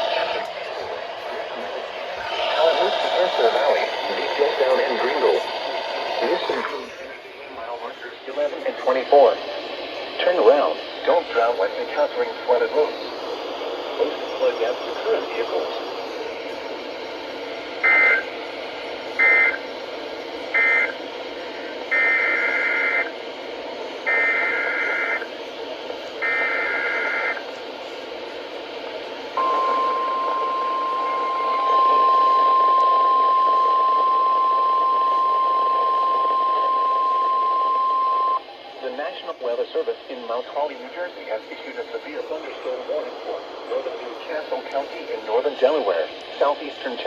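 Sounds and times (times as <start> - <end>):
radio static: 0.0 - 16.8, 24.1 - 28.2, 29.4 - 47.0
steady warning alarm tone: 17.8 - 18.4, 19.2 - 19.7, 20.5 - 21.0, 21.9 - 23.1, 24.1 - 25.3, 26.2 - 27.4, 29.4 - 39.3.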